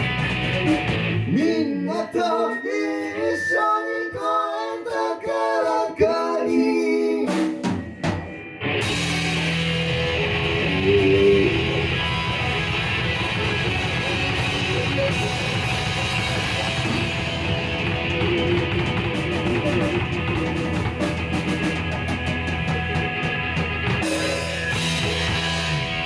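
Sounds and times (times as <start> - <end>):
rock band with guitar and drums: 0.0 - 3.5, 7.2 - 26.0
person singing: 1.3 - 7.6, 10.5 - 12.4.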